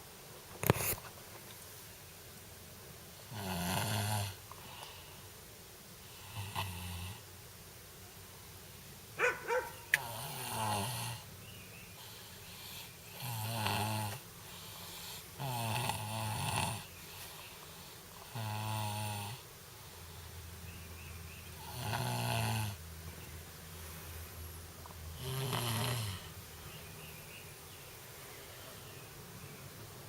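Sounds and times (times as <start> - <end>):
child snoring: 3.3 - 4.8, 6.1 - 7.2, 10.0 - 11.3, 12.0 - 16.9, 18.2 - 19.4, 21.6 - 22.8, 25.2 - 26.4.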